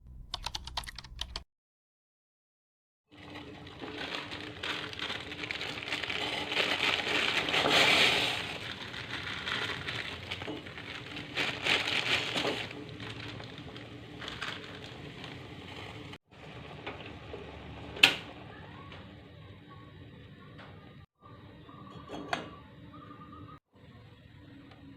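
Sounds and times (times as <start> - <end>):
crackling and rustling: 3.2 - 16.2.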